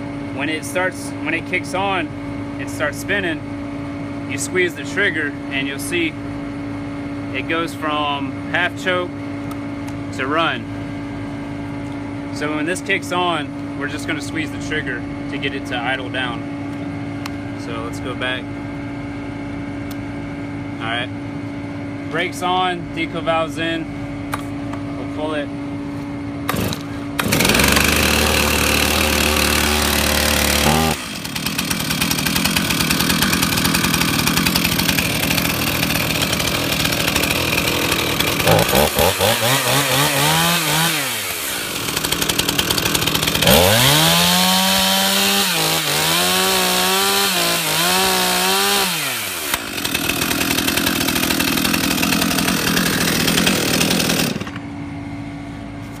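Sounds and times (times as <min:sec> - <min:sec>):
chainsaw running and revving: 0:26.5 - 0:54.6.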